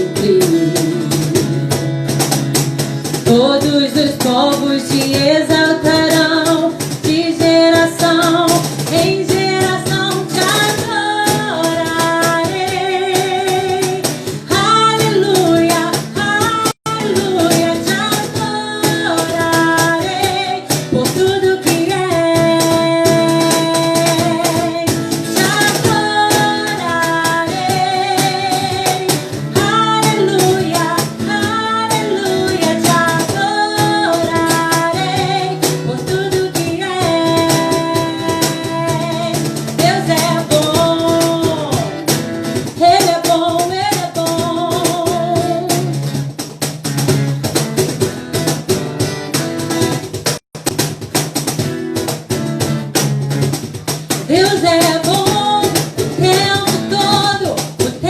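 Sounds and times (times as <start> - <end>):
person singing: 0.0 - 1.6, 3.2 - 42.1
drums: 0.0 - 58.0
guitar: 0.0 - 58.0.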